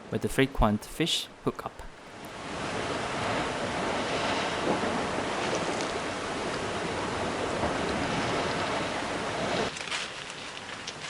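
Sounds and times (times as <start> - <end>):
waves washing on rocky shore: 2.4 - 11.0.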